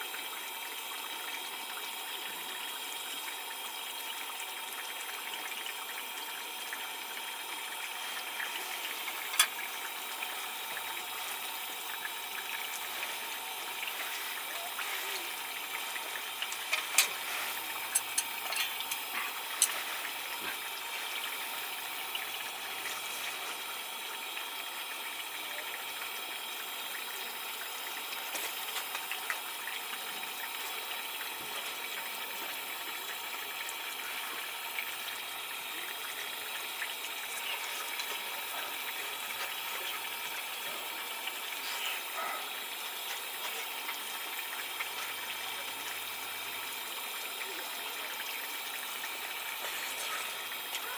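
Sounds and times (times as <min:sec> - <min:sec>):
running water: 0:00.0 - 0:50.9.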